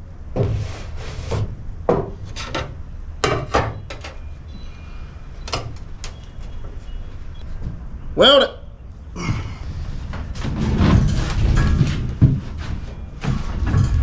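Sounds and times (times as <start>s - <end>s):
metal tools clanking on steel: 2.4s - 4.3s, 5.4s - 6.6s.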